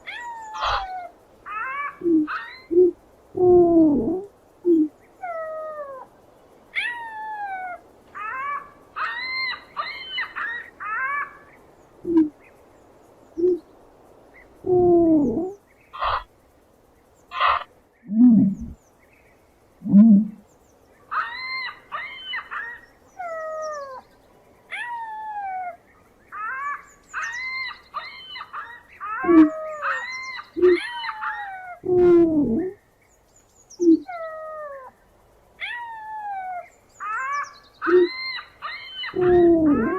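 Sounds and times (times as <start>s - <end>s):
birds calling: 0.0s - 39.9s
low bird hoots: 0.1s - 6.1s, 12.0s - 12.4s, 13.4s - 13.7s, 14.6s - 16.3s, 17.3s - 18.8s, 19.8s - 20.4s, 24.8s - 32.8s, 33.8s - 34.9s, 35.6s - 39.9s.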